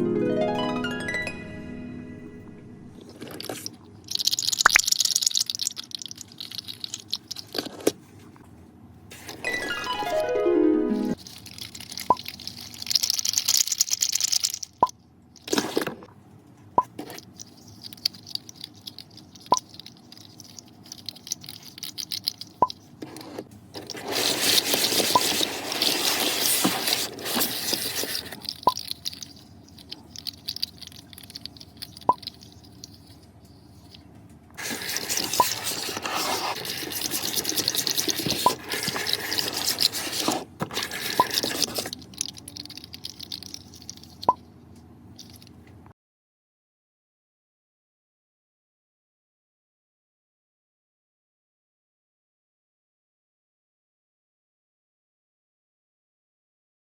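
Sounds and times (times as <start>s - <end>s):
plastic toy segments clattering: 11.1s - 16.1s, 17.0s - 33.2s, 34.6s - 44.3s.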